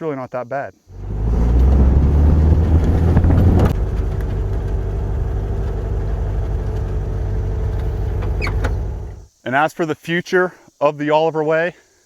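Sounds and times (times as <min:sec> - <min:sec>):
engine rumbling: 0:00.9 - 0:09.3.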